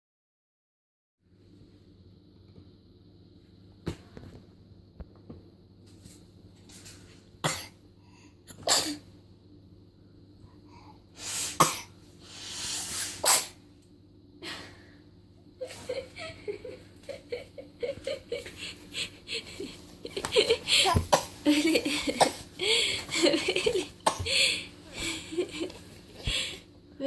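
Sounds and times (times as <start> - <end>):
baby sneezing: 8.5 - 9.0, 13.0 - 13.6, 20.9 - 21.4.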